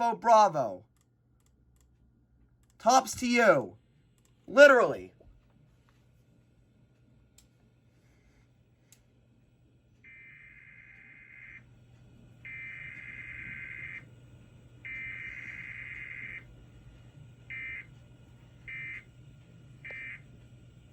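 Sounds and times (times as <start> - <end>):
steady low hum: 0.0 - 20.9
warbling data tone bursts: 12.5 - 14.0, 14.9 - 16.5.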